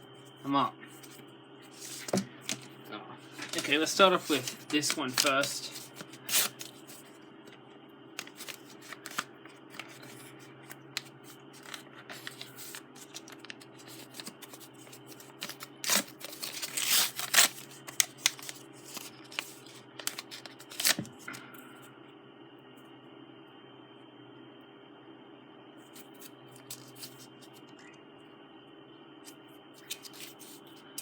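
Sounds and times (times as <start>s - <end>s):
low steady hum: 0.0s - 31.0s
envelope paper rustling: 1.0s - 2.7s, 3.3s - 7.1s, 8.2s - 21.3s, 29.8s - 30.7s
paper tearing: 3.6s - 7.0s, 11.6s - 21.0s.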